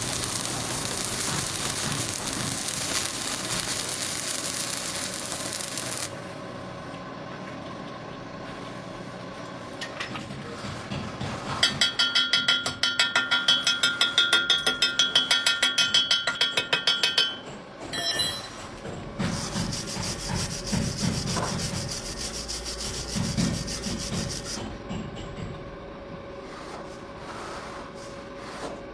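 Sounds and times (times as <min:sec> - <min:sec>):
welding arc crackling: 0:00.0 - 0:06.2
hammer striking steel: 0:11.6 - 0:18.6.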